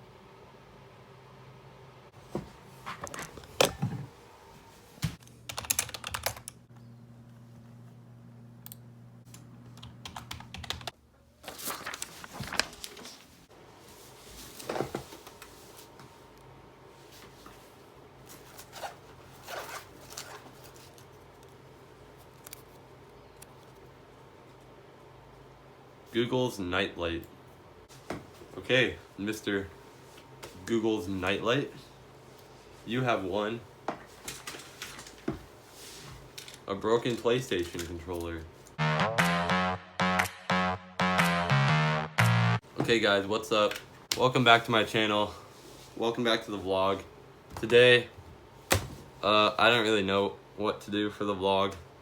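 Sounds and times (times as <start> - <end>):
keyboard typing: 5.5 - 6.6, 9.8 - 11.0.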